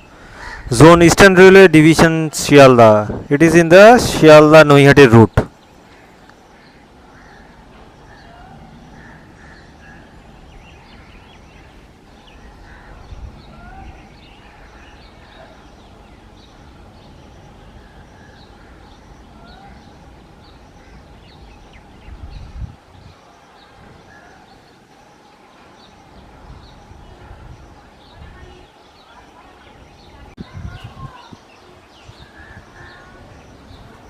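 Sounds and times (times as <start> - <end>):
birds chirping: 0.0 - 34.0.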